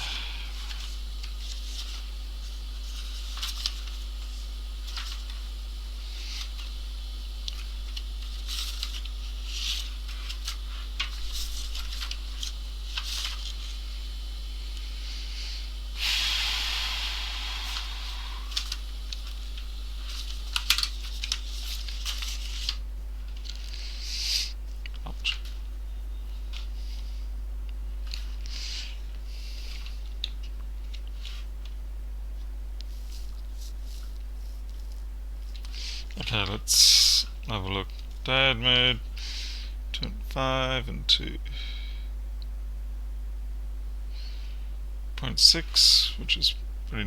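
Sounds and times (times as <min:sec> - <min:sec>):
faint hiss: 0:00.0 - 0:07.3, 0:08.2 - 0:20.4
steady low hum: 0:00.0 - 0:47.0.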